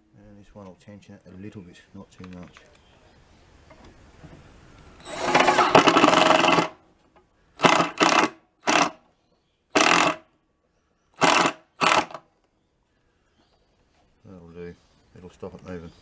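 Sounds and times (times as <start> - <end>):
power drill driving screw: 5.0 - 6.8, 7.6 - 9.0, 9.8 - 10.2, 11.2 - 12.2.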